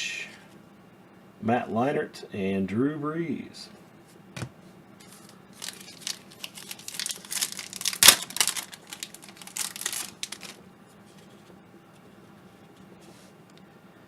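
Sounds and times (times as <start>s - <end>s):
wrapper being torn and crinkled: 5.0s - 10.6s.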